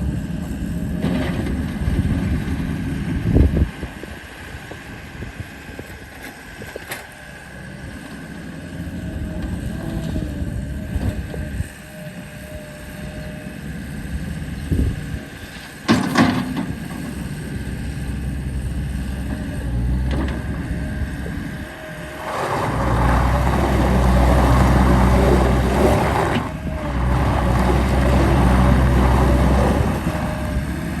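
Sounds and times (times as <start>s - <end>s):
diesel engine revving: 7.4s - 31.0s.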